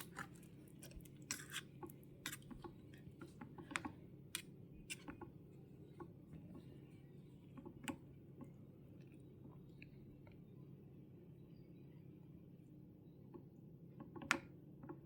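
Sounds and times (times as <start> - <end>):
small utensils clicking: 0.0 - 2.6.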